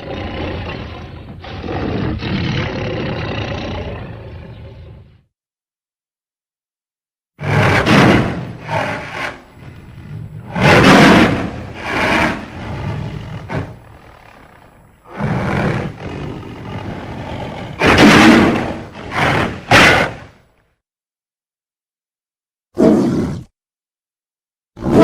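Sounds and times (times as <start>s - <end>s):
raspy cartoon growls: 0.0s - 5.1s, 7.4s - 20.3s.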